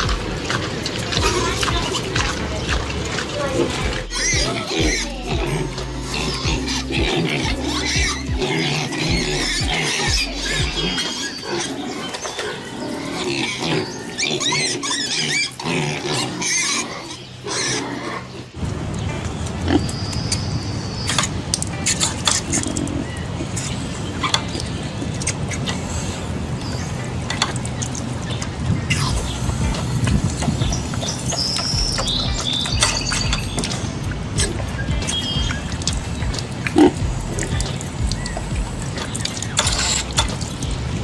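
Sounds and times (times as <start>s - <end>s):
background music: 0.0s - 11.6s, 28.9s - 41.0s
busy noisy haze: 0.0s - 14.2s, 15.0s - 41.0s
pigs squealing and grunting: 0.0s - 18.6s, 30.6s - 40.7s
sharp clicks: 34.4s - 40.8s.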